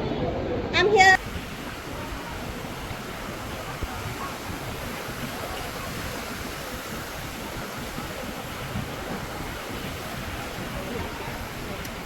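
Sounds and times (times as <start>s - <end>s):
flowing water rushing: 0.6s - 12.0s.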